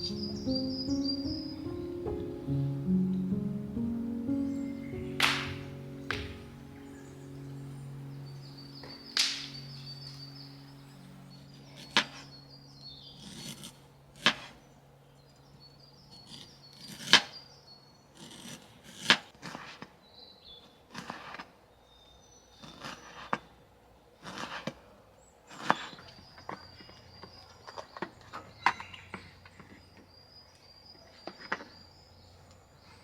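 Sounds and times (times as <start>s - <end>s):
background music: 0.0s - 15.0s.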